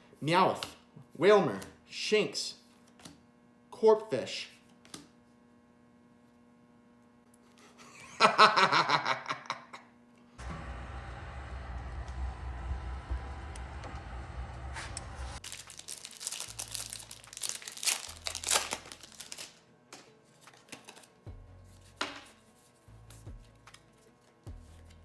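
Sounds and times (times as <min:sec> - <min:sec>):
foil wrapper crinkling and tearing: 0:15.4 - 0:19.7, 0:20.4 - 0:21.2.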